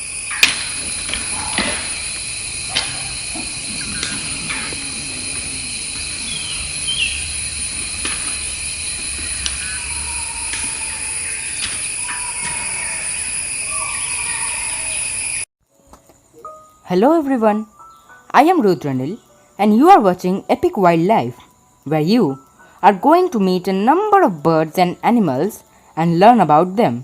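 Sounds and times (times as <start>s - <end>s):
high-pitched drone: 0.0s - 15.5s
bird chirps: 1.3s - 15.4s.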